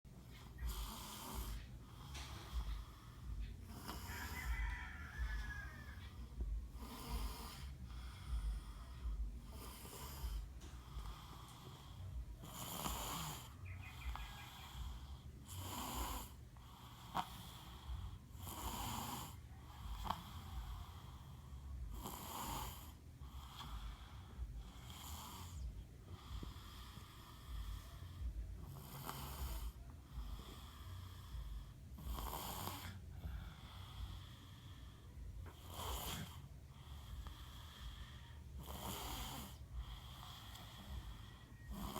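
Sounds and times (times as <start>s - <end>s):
child snoring: 0.3s - 41.9s
low rumble: 4.4s - 12.4s.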